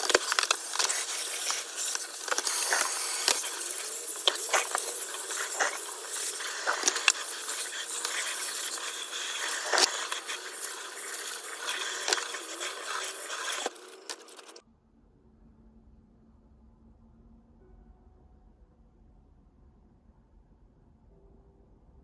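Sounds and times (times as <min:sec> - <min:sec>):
objects scraping and rustling: 0:00.0 - 0:14.6
faint low hum: 0:14.6 - 0:22.0.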